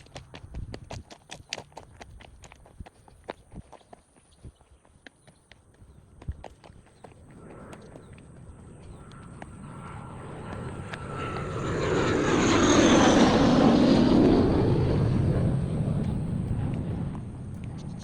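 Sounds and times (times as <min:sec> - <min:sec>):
aircraft flying over: 0:00.0 - 0:03.4, 0:04.8 - 0:18.0
high engine whine: 0:05.6 - 0:18.0.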